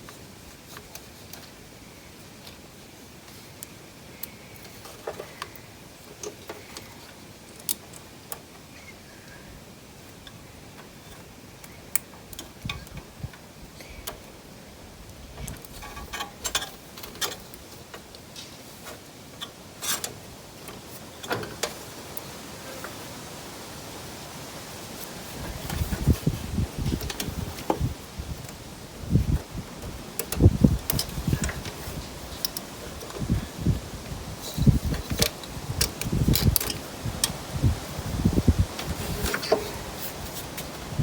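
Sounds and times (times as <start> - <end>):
metal connectors and tools clicking: 3.6 - 8.5, 15.0 - 18.8, 25.4 - 38.2.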